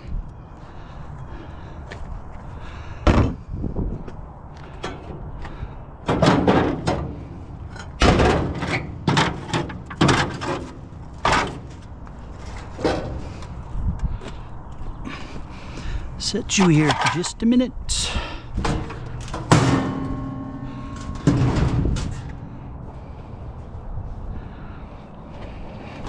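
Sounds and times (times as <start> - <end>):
heavy scrap knocking and clunking: 18.6 - 22.4.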